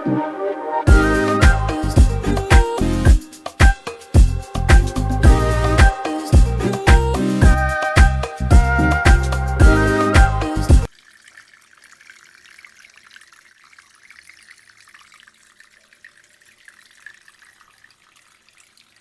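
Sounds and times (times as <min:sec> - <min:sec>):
water trickling in a fountain: 0:10.8 - 0:19.0.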